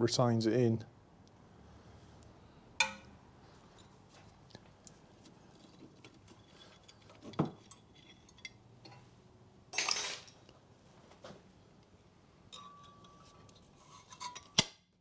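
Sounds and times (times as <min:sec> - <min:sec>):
metal parts clinking: 0:09.8 - 0:10.5
metallic scrape: 0:12.6 - 0:14.6.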